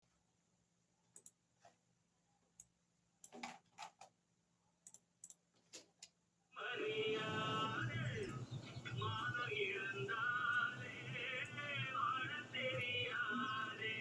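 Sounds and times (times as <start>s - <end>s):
faint clicks and taps: 1.0s - 1.8s
loud music with singing: 6.6s - 14.0s.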